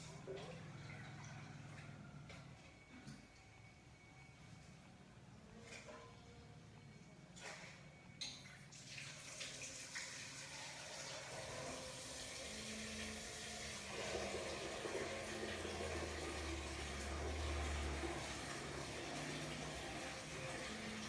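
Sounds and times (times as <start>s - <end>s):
running water: 8.3s - 21.0s.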